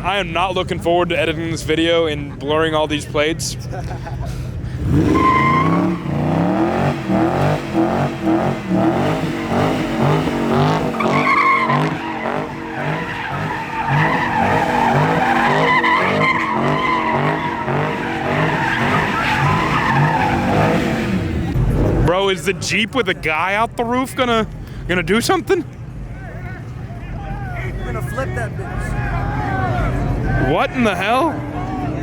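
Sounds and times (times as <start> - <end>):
car engine revving: 4.7 - 22.1
tires squealing: 4.8 - 22.1.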